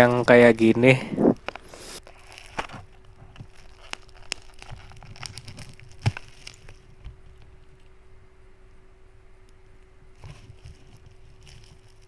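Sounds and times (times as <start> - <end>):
package clicking and crackling: 1.4 - 7.9.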